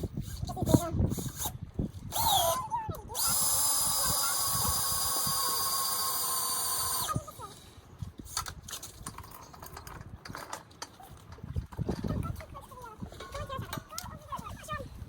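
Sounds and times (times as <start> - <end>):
cordless power tool running: 2.1 - 2.6, 3.2 - 7.2.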